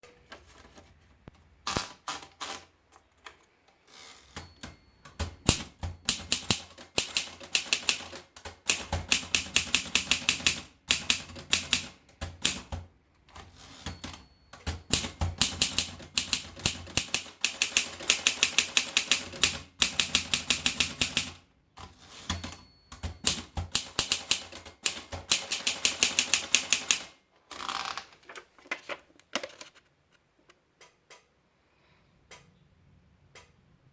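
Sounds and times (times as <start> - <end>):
typewriter bell ringing: 4.3 - 6.6, 13.6 - 15.8, 22.0 - 24.3
typewriter key strikes: 4.6 - 12.8, 13.4 - 21.4, 22.2 - 27.1.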